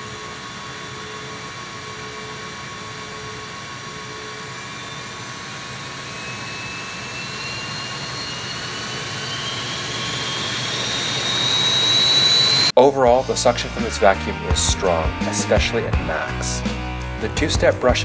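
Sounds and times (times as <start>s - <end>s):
vacuum cleaner motor whine: 0.0s - 12.8s.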